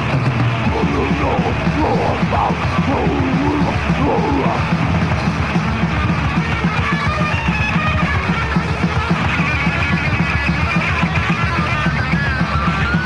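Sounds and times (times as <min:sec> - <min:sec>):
death metal band playing live: 0:00.0 - 0:13.0.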